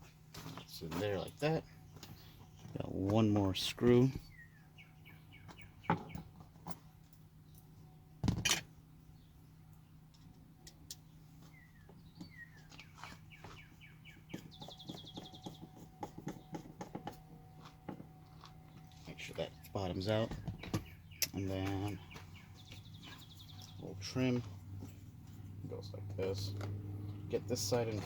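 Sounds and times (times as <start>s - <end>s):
songbirds chirping: 0.0s - 28.0s
bird trill: 4.2s - 6.4s, 11.4s - 16.7s, 18.7s - 24.5s.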